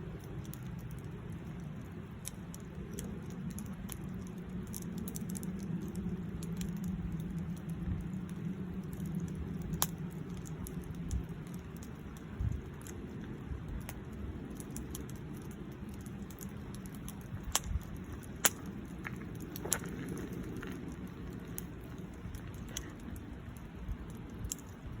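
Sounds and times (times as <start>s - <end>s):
steady low rumble: 0.0s - 25.0s
wood fire crackling: 0.0s - 25.0s
sharp pops from fire: 0.1s - 25.0s.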